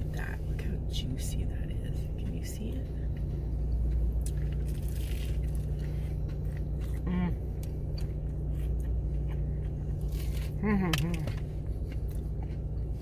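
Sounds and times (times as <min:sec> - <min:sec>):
low hum inside a car: 0:00.0 - 0:13.0
person chewing a sandwich: 0:03.0 - 0:13.0.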